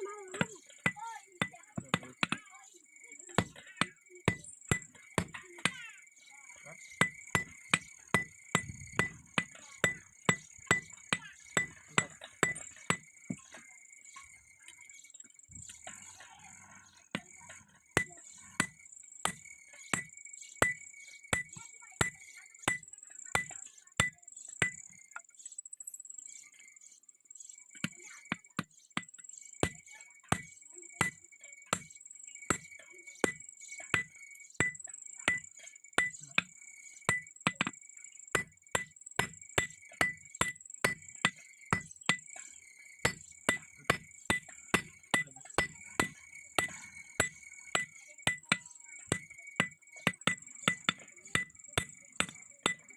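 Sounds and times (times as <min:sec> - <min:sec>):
hammer striking steel on anvil: 0:00.3 - 0:02.4, 0:03.4 - 0:05.8, 0:06.7 - 0:13.5, 0:17.1 - 0:20.8, 0:21.4 - 0:24.8, 0:32.5 - 0:36.5, 0:37.1 - 0:37.8, 0:38.4 - 0:42.3, 0:43.0 - 0:52.9.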